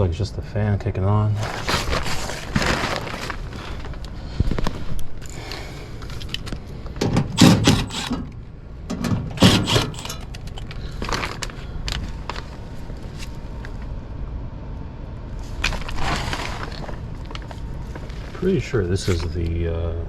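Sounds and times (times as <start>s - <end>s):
scraping and rustling: 1.4s - 3.6s
loud thumps: 7.3s - 8.3s, 9.4s - 10.2s.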